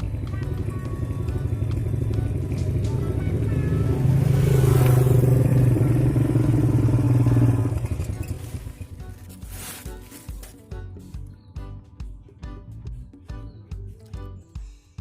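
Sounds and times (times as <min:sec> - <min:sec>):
motorcycle engine running: 0:00.0 - 0:10.6.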